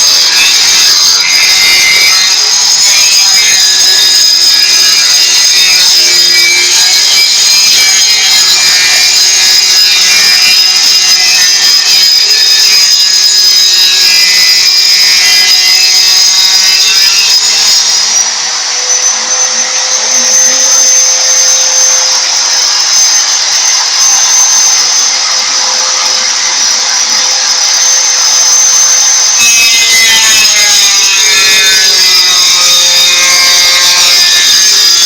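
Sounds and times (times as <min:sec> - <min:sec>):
tile cutter grinding whine: 0:00.0 - 0:35.0.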